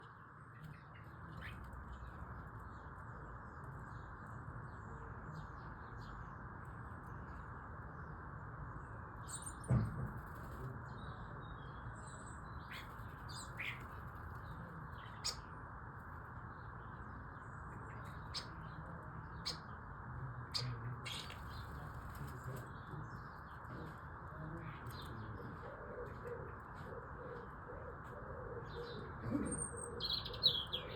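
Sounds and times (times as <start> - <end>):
starlings chattering: 9.2 - 25.6.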